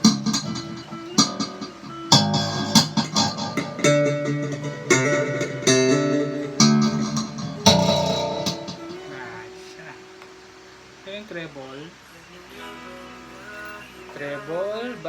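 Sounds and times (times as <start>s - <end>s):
electric bass guitar plucked notes: 0.0s - 11.0s.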